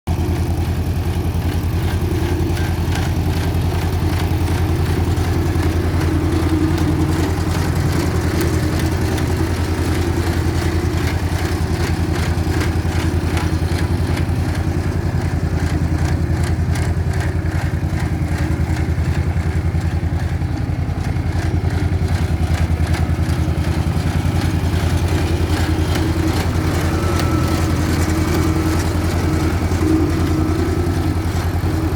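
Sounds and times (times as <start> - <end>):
diesel engine humming: 0.1 - 31.9.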